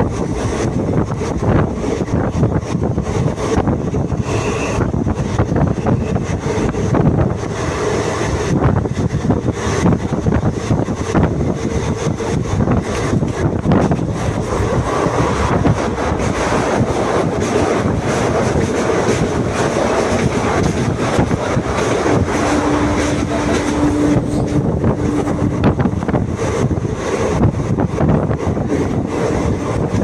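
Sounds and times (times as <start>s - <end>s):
train rumbling on rails: 0.0s - 30.0s
wind on microphone: 0.0s - 30.0s
steady tone: 19.7s - 28.2s.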